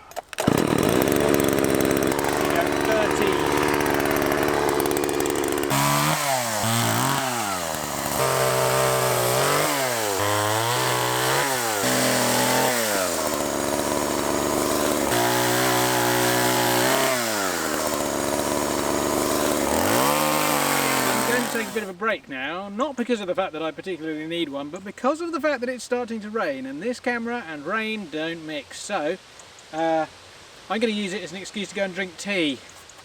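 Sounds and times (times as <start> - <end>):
chainsaw cutting wood: 0.0 - 21.9.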